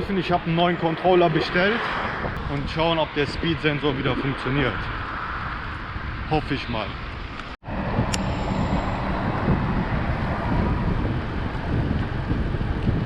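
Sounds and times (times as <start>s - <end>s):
wind rushing over microphone: 0.0s - 13.0s
bike tyre rolling noise: 7.0s - 13.0s.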